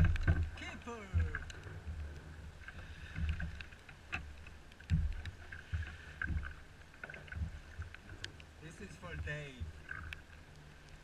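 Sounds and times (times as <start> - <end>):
low knocks and clicks: 0.0 - 8.5
water slapping against kayak hull: 0.0 - 11.0.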